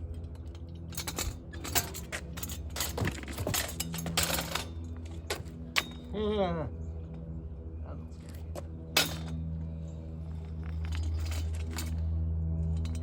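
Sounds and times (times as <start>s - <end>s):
steady low hum: 0.0s - 13.0s
metal clanks from motorcycle lift: 0.9s - 4.7s.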